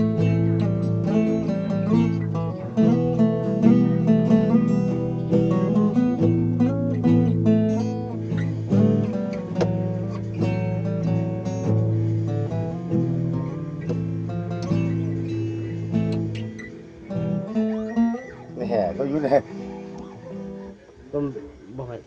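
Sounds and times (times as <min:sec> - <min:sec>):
acoustic guitar strummed and picked: 0:00.0 - 0:20.9.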